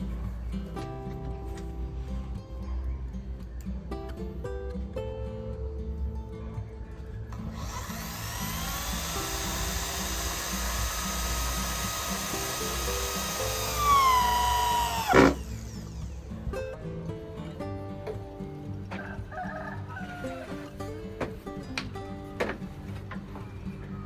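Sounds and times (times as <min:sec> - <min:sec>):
background music: 0:00.0 - 0:24.0
electric drill whining: 0:07.4 - 0:16.4.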